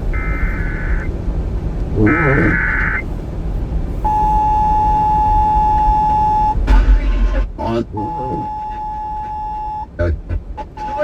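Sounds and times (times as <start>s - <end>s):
radio static and hum: 0.0s - 1.1s, 1.8s - 11.0s
steady warning alarm tone: 0.0s - 1.1s, 2.0s - 3.1s, 4.0s - 10.0s
warbling digital data tones: 0.1s - 1.1s, 2.0s - 3.0s, 4.1s - 9.9s.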